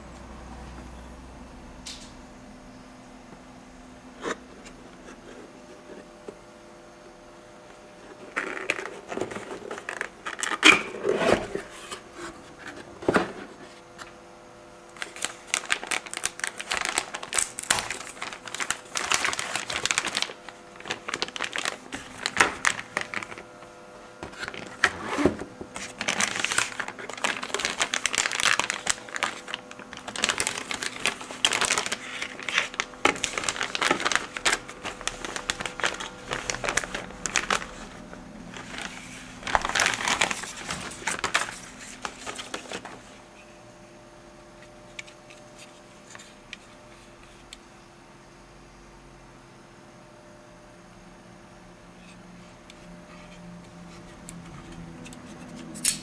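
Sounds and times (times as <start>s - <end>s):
faint steady hum with tones: 0.0s - 56.0s
crinkling and crackling: 7.7s - 14.2s, 15.0s - 43.2s.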